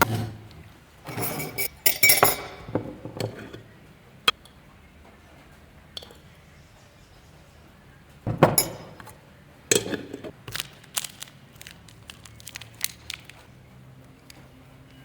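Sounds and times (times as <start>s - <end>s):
glassy clink: 1.1s - 3.5s, 8.3s - 10.0s.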